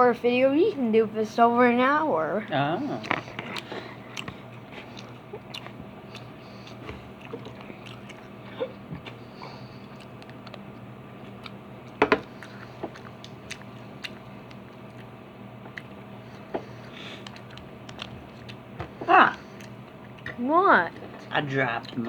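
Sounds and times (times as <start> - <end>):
person chewing: 3.0 - 20.4.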